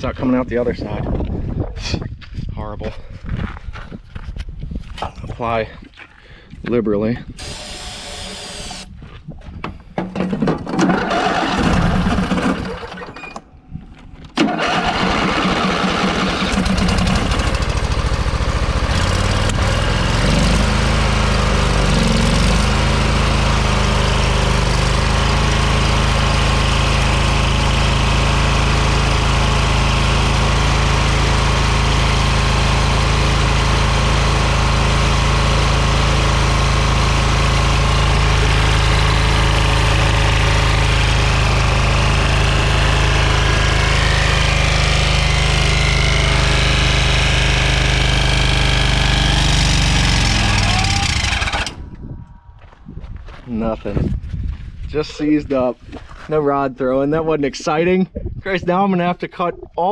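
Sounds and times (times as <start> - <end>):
lawn mower engine: 7.4 - 8.9, 10.1 - 13.6, 14.2 - 52.5.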